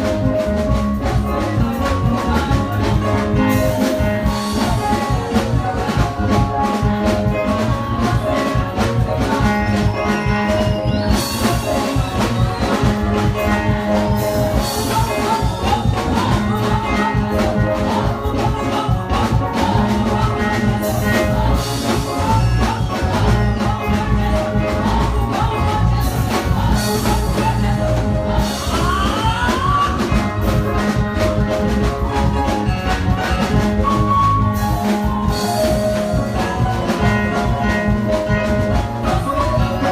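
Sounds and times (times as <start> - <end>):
drums steady beat: 0.0 - 39.9
live band: 0.0 - 39.9
choir singing: 7.4 - 29.7.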